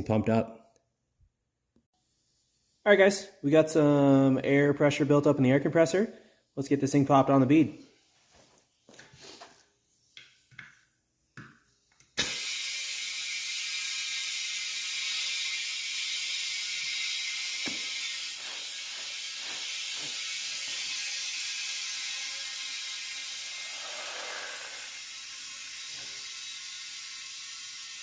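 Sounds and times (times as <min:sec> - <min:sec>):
compressed air hissing into tire: 0:12.1 - 0:28.0.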